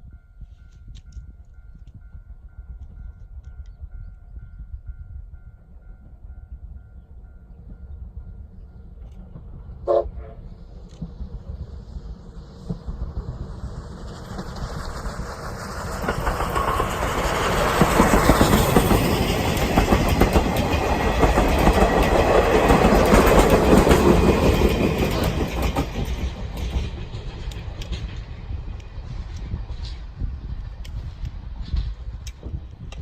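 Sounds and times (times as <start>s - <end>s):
steam train passing: 5.6s - 33.0s.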